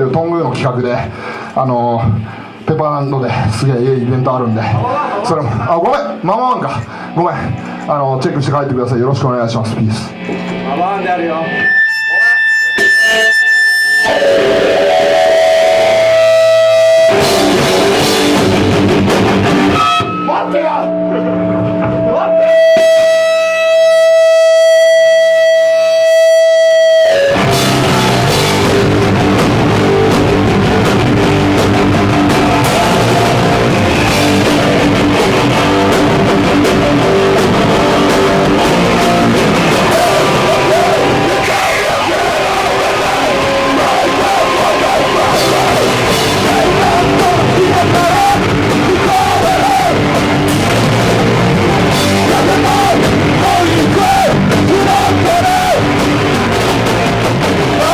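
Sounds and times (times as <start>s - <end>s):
vocals: 0.0s - 13.4s, 19.8s - 22.6s, 32.5s - 56.8s, 57.6s - 57.9s
hardcore band playing live: 9.6s - 57.9s
electric guitar tone: 9.7s - 57.9s.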